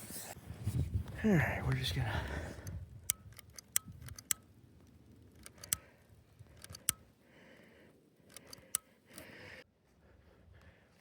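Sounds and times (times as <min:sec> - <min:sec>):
soft rustle: 0:00.0 - 0:01.3.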